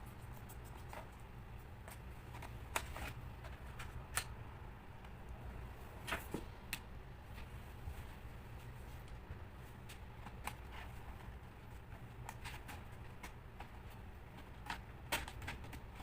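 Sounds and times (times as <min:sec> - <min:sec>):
steady low hum: 0:00.0 - 0:16.0
light clicks and taps of laptop parts: 0:09.8 - 0:10.7.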